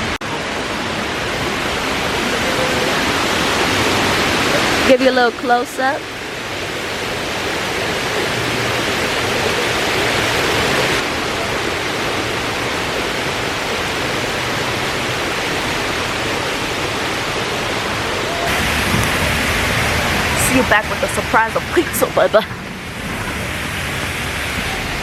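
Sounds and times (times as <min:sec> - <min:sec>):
loud rushing noise: 0:15.6 - 0:25.0.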